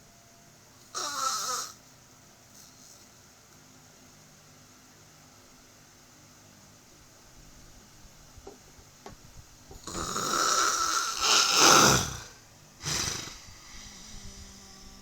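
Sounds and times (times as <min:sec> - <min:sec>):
person snoring: 0:00.9 - 0:01.8, 0:09.8 - 0:14.2.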